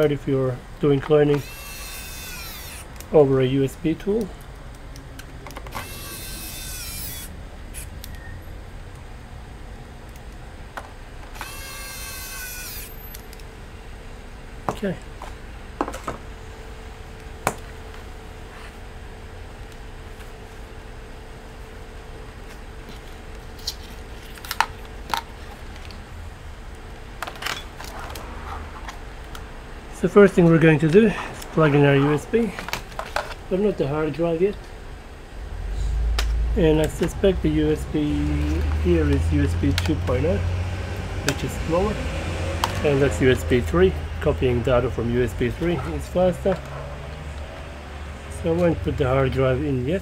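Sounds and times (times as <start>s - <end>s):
low steady hum: 0.0s - 50.0s
electric screwdriver whining: 1.3s - 3.0s, 5.7s - 7.9s, 11.3s - 13.2s.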